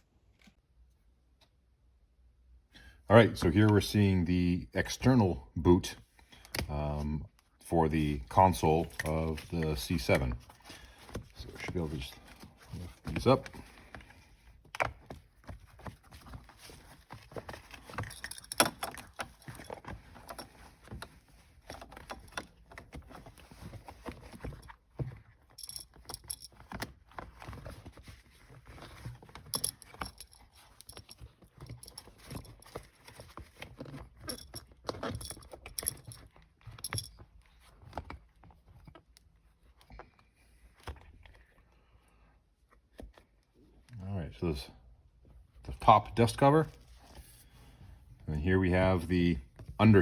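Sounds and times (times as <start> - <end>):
rustling of plastic: 8.2 - 43.9.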